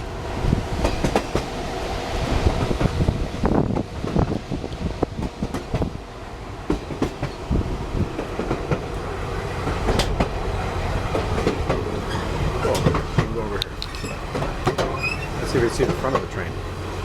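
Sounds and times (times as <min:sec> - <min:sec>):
clicks and knocks of railcar: 0:00.0 - 0:17.0
wheels rumbling on rail: 0:00.0 - 0:17.0.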